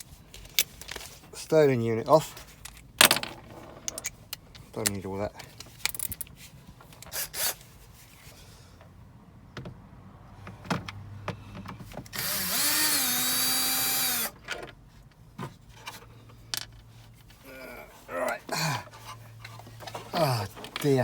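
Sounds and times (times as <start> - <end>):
handling knocks and clicks: 0.0 - 1.4, 2.3 - 7.2, 10.4 - 12.2, 14.3 - 17.4, 18.3 - 21.0
cordless drill spinning: 7.1 - 7.6, 12.1 - 14.4.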